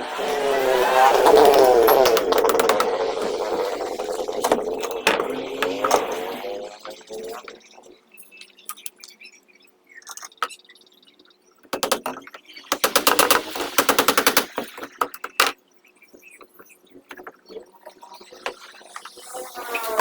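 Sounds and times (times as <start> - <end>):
rapid rattling clatter: 0.0 - 6.4, 11.8 - 15.3.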